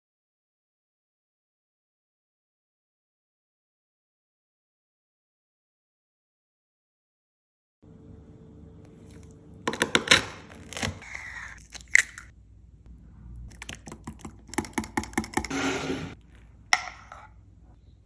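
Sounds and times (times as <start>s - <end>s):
sharp clicks and taps: 13.6s - 15.5s.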